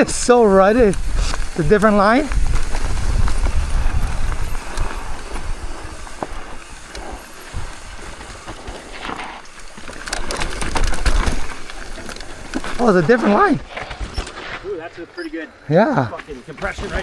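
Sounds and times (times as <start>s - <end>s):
wind buffeting microphone: 0.0s - 9.0s
bike rattles and clicks: 0.0s - 17.0s
bike tyres crunching over dirt: 0.0s - 17.0s.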